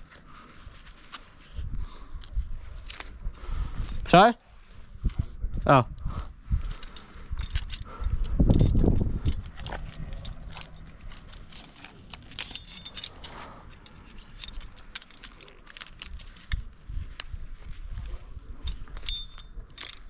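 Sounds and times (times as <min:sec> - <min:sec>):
metal climbing hardware clinking: 0:05.0 - 0:20.0.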